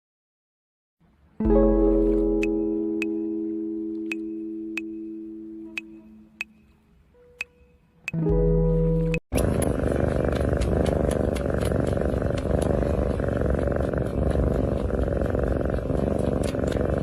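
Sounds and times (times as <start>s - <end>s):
cat purring: 9.4s - 17.0s.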